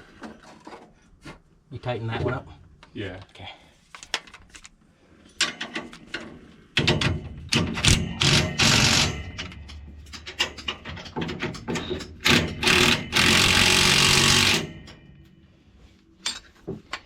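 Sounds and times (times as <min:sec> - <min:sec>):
metal parts clanking: 0:05.4 - 0:13.4, 0:16.2 - 0:17.0
power tool running: 0:12.3 - 0:14.8.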